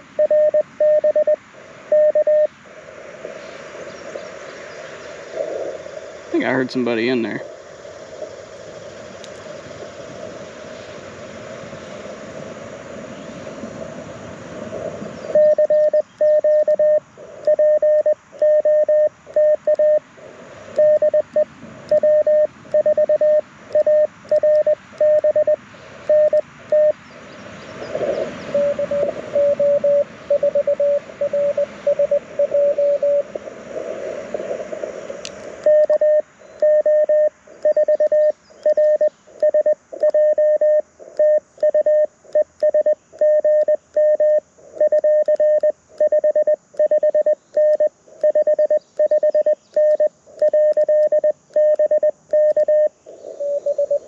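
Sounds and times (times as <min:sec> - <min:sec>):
morse code sidetone: 0:00.0 - 0:02.5, 0:15.3 - 0:20.0, 0:20.8 - 0:27.0, 0:28.5 - 0:33.4, 0:35.6 - 0:54.0
faint lower morse signal: 0:00.0 - 0:12.2, 0:14.6 - 0:27.2, 0:27.8 - 0:54.0
receiver hiss: 0:00.0 - 0:54.0.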